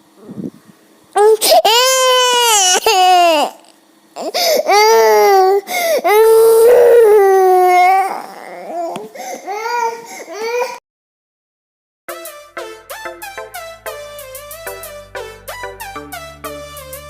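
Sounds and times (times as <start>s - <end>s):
child crying: 1.2s - 10.8s.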